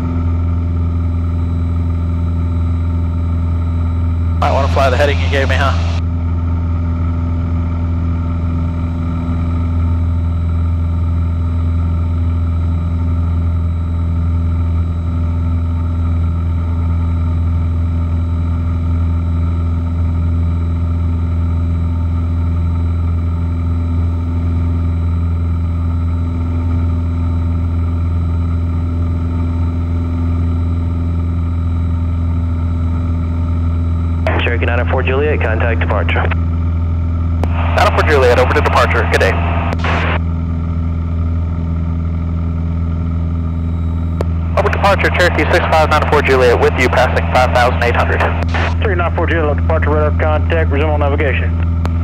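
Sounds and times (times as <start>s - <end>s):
aircraft engine and propeller hum: 0.0s - 52.0s.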